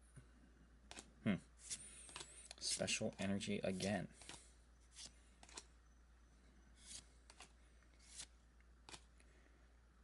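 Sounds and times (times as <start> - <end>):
low steady hum: 0.0 - 10.0
cards swishing: 6.8 - 9.1.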